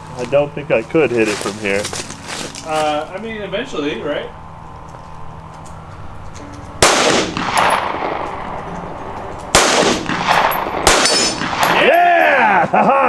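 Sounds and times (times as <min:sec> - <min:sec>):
gunshots with echo: 0:06.8 - 0:12.0.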